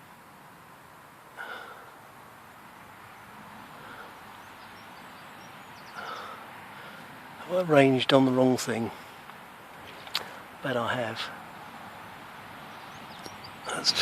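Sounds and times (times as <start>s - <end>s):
outdoor background hiss: 0.0s - 14.0s
faint ticks: 9.2s - 10.4s.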